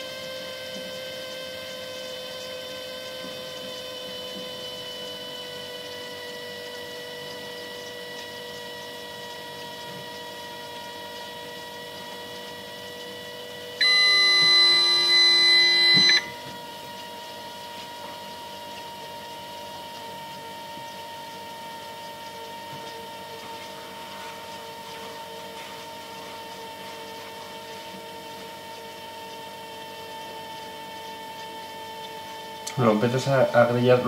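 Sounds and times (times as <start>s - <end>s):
fridge high-pitched whine: 0.0s - 34.0s
loud electronic tone: 13.8s - 16.5s.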